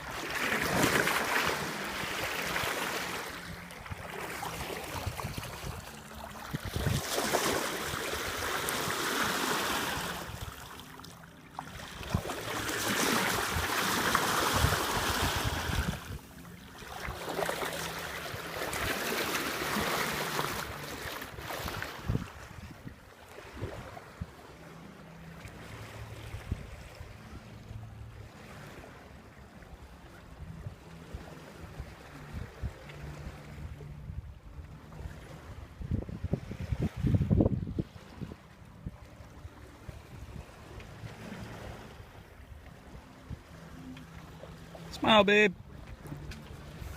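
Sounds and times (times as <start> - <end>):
water rushing along boat hull: 0.0 - 46.9.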